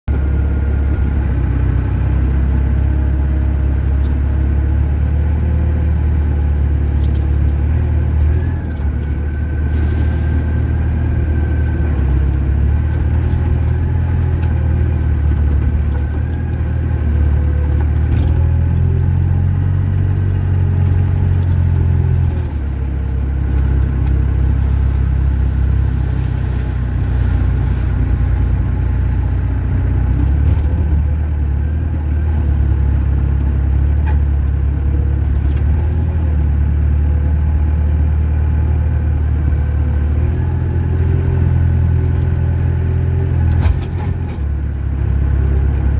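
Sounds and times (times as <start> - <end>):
diesel engine rumbling: 0.0 - 45.9.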